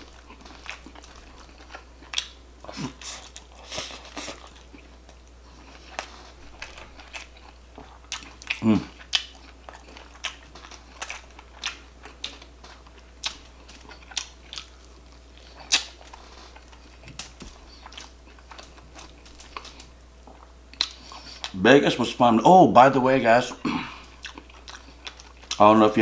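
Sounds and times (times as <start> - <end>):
close chewing mouth clicks: 5.8 - 12.5, 13.2 - 21.6.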